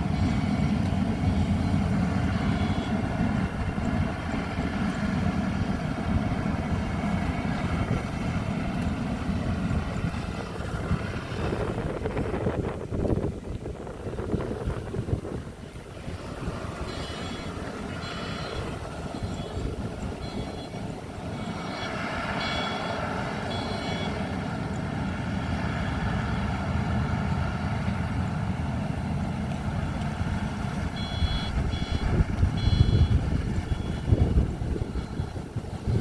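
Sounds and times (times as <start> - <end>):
reversing alarm beeping: 0.0 - 3.1, 16.8 - 24.3, 30.9 - 34.2
harvester engine rumble: 0.0 - 36.0.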